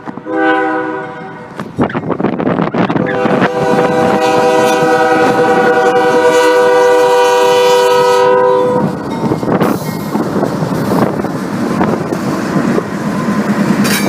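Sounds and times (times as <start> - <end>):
freight train rumbling: 0.0 - 14.0
locomotive air horn: 0.2 - 1.6, 2.9 - 9.0.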